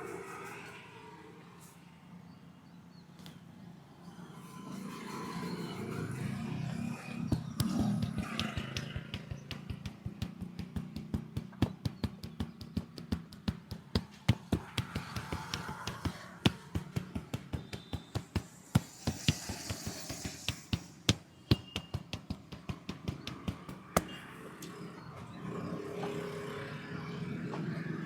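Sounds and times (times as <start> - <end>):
hands tapping a head: 7.3 - 24.2.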